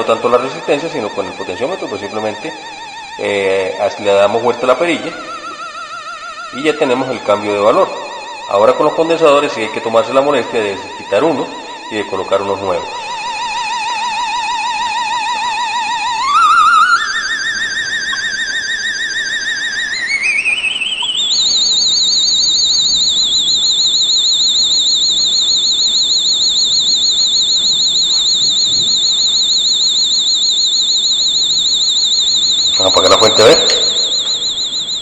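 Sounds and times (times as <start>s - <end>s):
warbling electronic tone: 0.0s - 35.0s.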